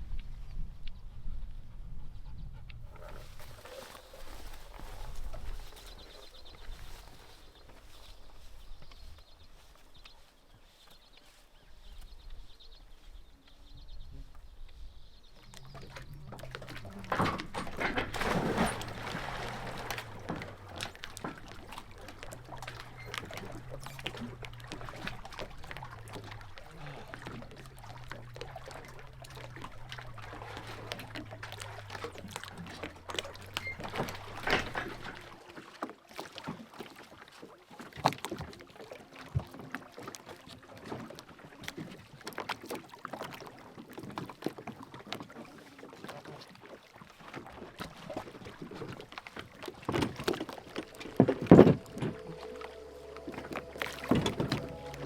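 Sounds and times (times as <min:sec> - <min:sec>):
boat motor humming: 0:15.4 - 0:35.3, 0:48.6 - 0:55.0
water splashing: 0:15.4 - 0:55.0.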